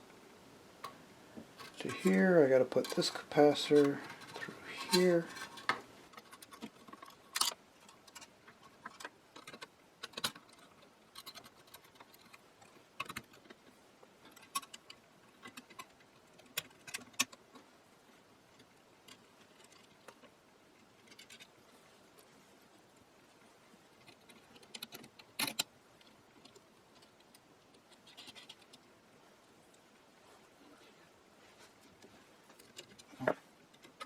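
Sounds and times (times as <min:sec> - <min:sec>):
metal parts clicking and tapping: 0:02.7 - 0:13.6, 0:24.0 - 0:28.8.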